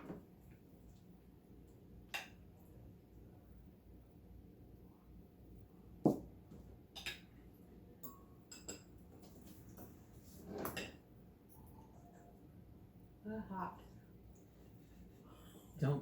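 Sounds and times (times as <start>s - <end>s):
dishes clinking: 8.0s - 11.0s.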